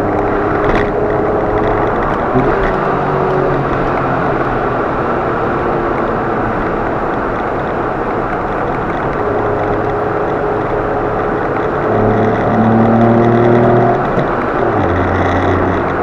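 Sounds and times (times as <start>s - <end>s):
road and engine noise: 0.0s - 16.0s
steady engine tone: 0.0s - 16.0s.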